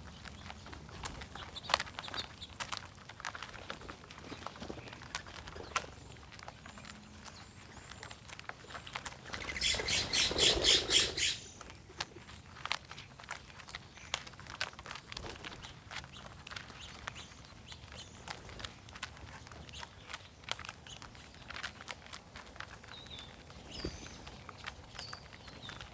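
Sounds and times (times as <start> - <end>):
bird squawking: 9.5 - 11.5.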